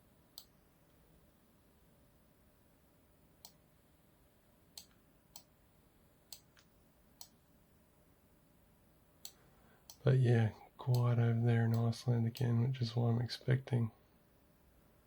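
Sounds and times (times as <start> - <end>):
computer mouse clicking: 4.8 - 5.5, 6.3 - 7.4.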